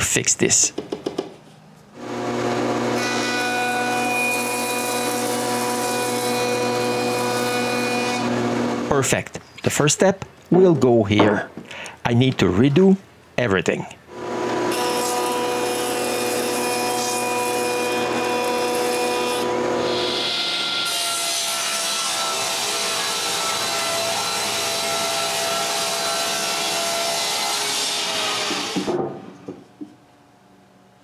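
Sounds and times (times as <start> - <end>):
power tool cutting wood: 2.0 - 8.9, 14.1 - 28.9.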